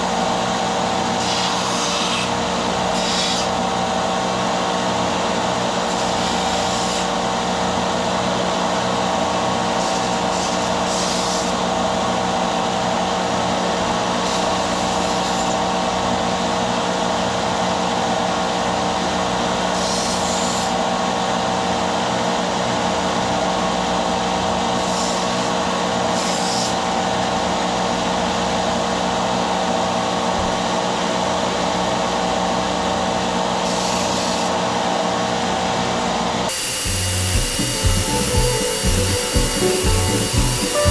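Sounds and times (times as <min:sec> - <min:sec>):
sanding hiss on metal: 0:09.8 - 0:11.6, 0:36.5 - 0:40.9
electric sander running: 0:36.5 - 0:40.9.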